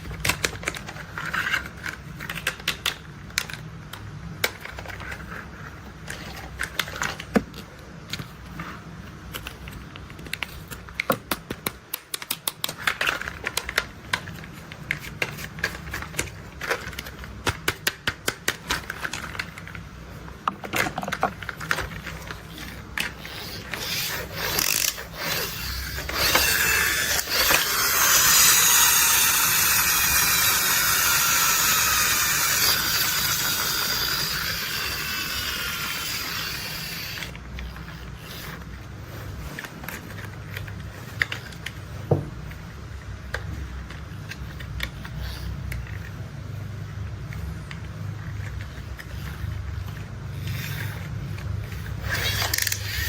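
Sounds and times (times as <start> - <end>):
toy mechanism clicking and ratcheting: 0.0 - 7.4, 9.3 - 41.9, 42.5 - 53.0
whirring with sliding pitch: 22.6 - 38.7.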